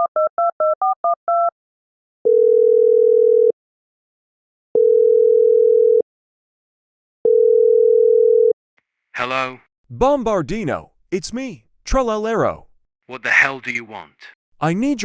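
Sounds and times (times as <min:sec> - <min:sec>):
telephone ringing tone: 0:02.3 - 0:03.5, 0:04.8 - 0:06.0, 0:07.3 - 0:08.6.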